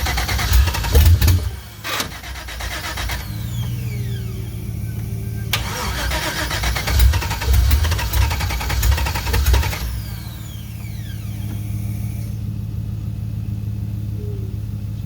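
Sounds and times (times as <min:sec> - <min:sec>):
steady low hum: 0:00.0 - 0:05.6
engine starter cranking: 0:00.0 - 0:12.4
starter whine spinning down: 0:00.0 - 0:12.7.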